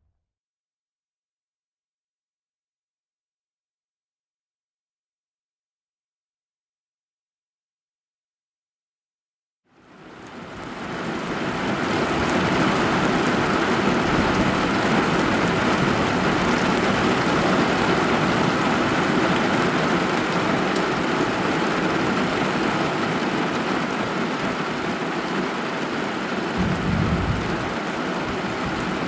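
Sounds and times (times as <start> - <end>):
heavy rain: 9.8 - 29.0.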